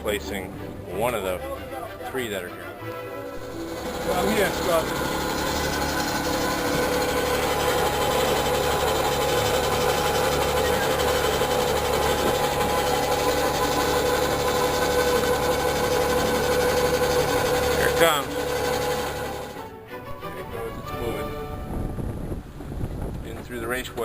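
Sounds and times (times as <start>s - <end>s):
machine motor humming: 3.3s - 19.7s.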